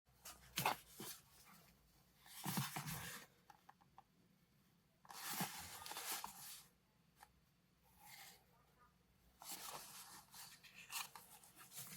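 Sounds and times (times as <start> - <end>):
packaging rustling and scraping: 5.1 - 6.7, 9.4 - 11.9.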